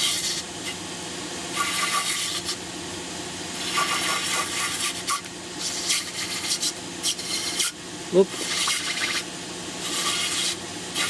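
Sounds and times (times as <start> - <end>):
gouge scraping turnip: 1.6 - 2.6, 3.6 - 7.8, 9.8 - 11.0.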